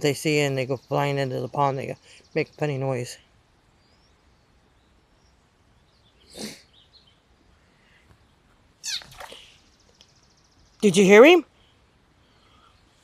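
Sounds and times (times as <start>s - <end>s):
frog squeaking: 8.8s - 9.4s.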